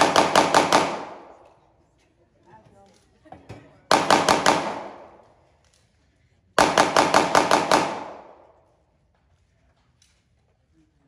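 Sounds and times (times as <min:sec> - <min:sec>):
pistol shots echoing: 0:00.0 - 0:01.5, 0:03.9 - 0:05.3, 0:06.6 - 0:08.6.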